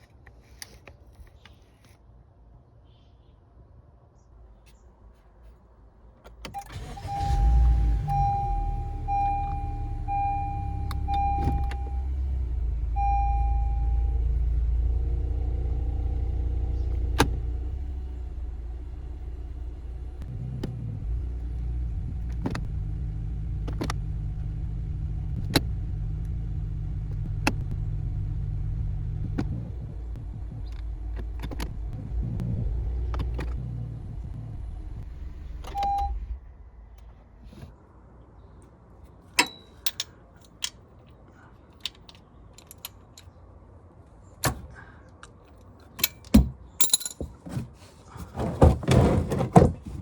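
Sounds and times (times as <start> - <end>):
car engine starting and idling: 6.3 - 37.4
dashboard warning chime: 6.6 - 12.3, 13.0 - 14.4, 35.7 - 36.2, 39.4 - 39.8.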